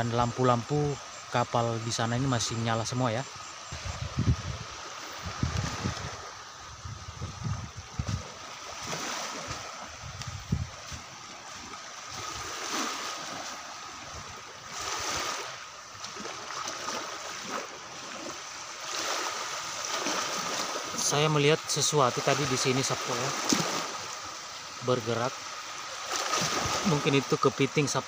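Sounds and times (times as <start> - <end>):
small sea waves washing on shore: 0.0 - 28.0.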